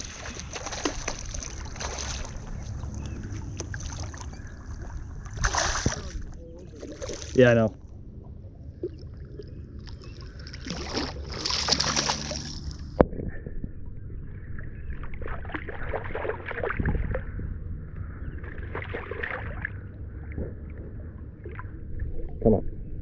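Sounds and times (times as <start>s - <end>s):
water splashing against kayak hull: 0.0s - 7.7s, 9.8s - 13.0s.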